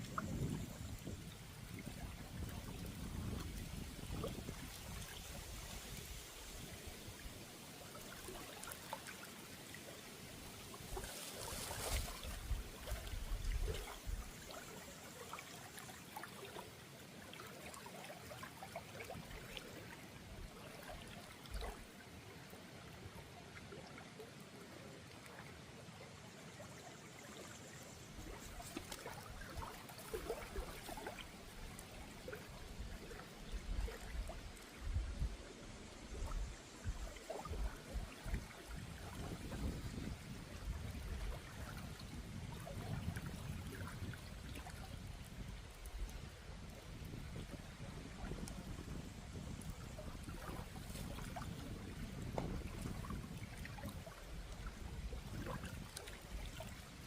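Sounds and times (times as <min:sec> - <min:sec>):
small splashes: 0:00.0 - 0:20.0, 0:28.2 - 0:34.7, 0:49.6 - 0:54.3
river trickling: 0:00.0 - 0:57.0.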